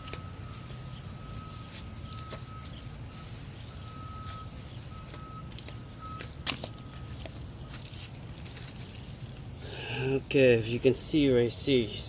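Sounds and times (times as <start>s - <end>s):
high beep-like tone: 0.2s - 7.1s.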